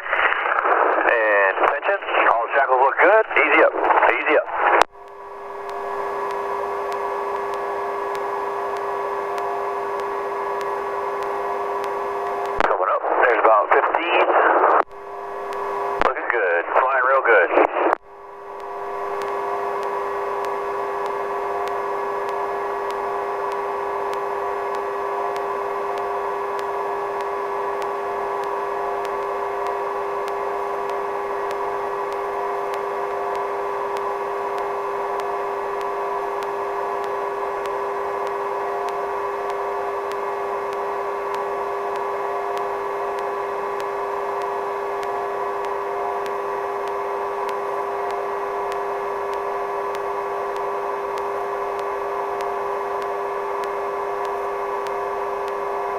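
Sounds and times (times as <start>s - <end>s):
helicopter turbine whine: 18.1s - 55.9s.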